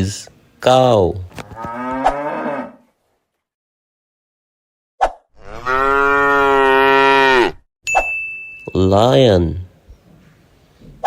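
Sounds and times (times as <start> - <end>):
cow mooing: 1.6 - 2.8, 5.4 - 7.6.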